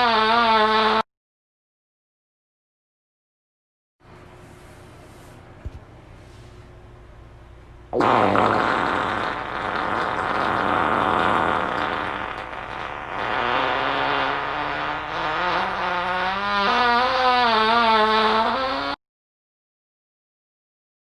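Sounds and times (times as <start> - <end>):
long loud fart: 0.0 - 1.1, 7.9 - 19.0.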